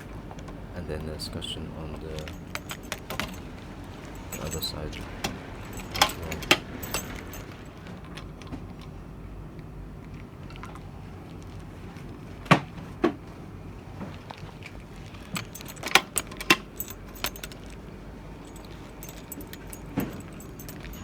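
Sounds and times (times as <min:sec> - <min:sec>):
keys jangling: 0:02.0 - 0:07.9, 0:15.2 - 0:21.0
door lock clicking and knocking: 0:02.3 - 0:03.5, 0:15.4 - 0:17.6.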